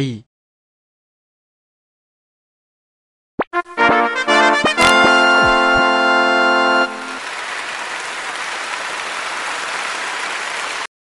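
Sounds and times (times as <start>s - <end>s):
sound-effect applause: 3.8s - 10.9s.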